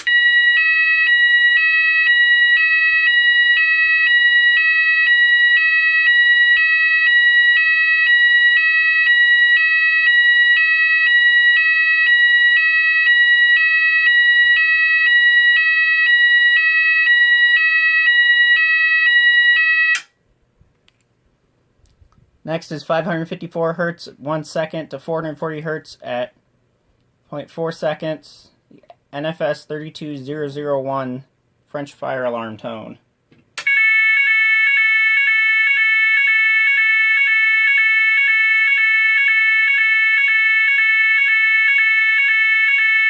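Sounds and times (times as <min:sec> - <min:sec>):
alternating two-tone alarm: 0:00.0 - 0:20.1, 0:33.6 - 0:43.0.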